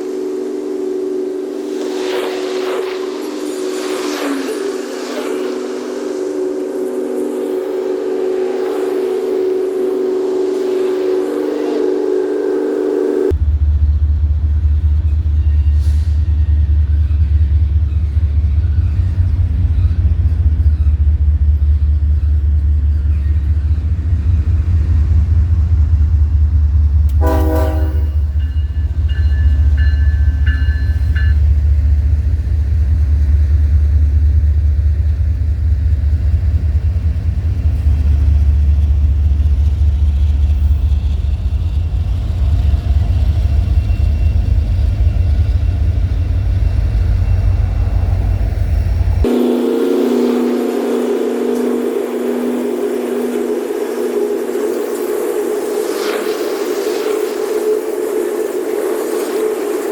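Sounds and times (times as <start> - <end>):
high steady ringing tones: 0.0 - 13.4, 16.4 - 33.2, 34.6 - 59.9
train horn toot: 0.0 - 13.4, 27.0 - 31.6, 49.2 - 56.1
train rumbling past: 0.0 - 59.9.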